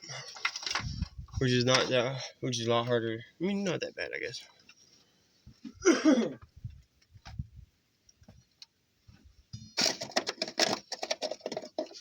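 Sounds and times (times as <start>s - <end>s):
metal clicking and rattling: 9.6s - 12.0s.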